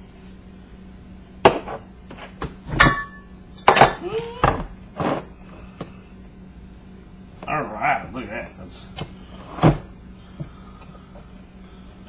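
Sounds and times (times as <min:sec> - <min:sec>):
metal fan parts knocking and clinking: 0:02.8 - 0:04.0.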